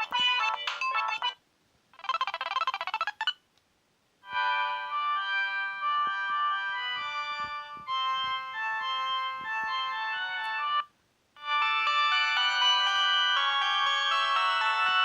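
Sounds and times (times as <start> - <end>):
polyphonic phone ringtone: 0.0 - 1.4, 4.3 - 10.8, 11.4 - 15.0.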